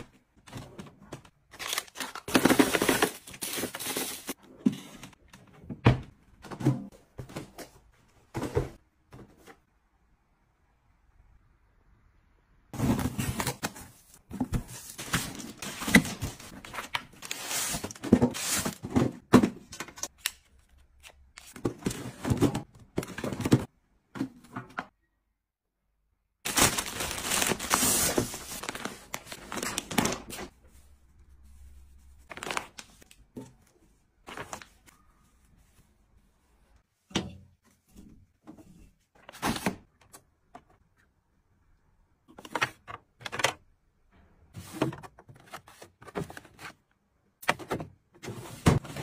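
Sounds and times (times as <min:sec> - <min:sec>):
packaging crinkling and tearing: 0:01.5 - 0:04.4, 0:26.5 - 0:30.4.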